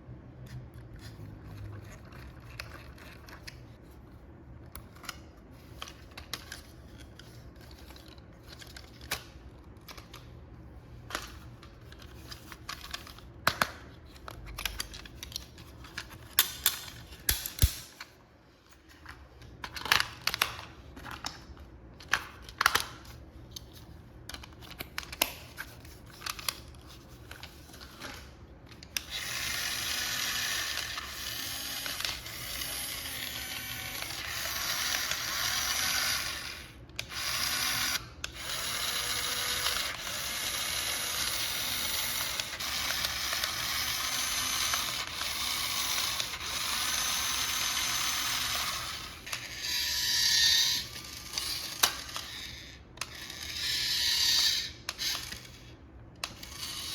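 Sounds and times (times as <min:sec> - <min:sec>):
plastic clicks and handling: 0:04.6 - 0:10.4, 0:11.0 - 0:29.2
toy car motor whirring: 0:28.9 - 0:56.9.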